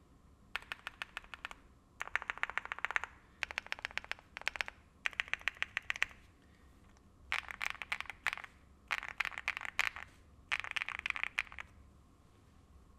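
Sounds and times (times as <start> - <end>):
mechanical keyboard typing: 0.6 - 6.2, 7.3 - 11.7.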